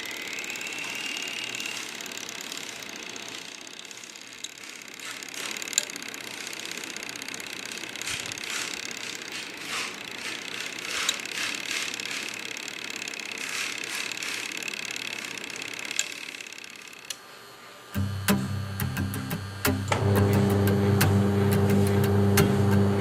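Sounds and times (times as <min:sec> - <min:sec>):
washing machine timer whirring: 0:00.0 - 0:23.0
timer clicks: 0:10.4 - 0:17.2
music: 0:18.0 - 0:23.0.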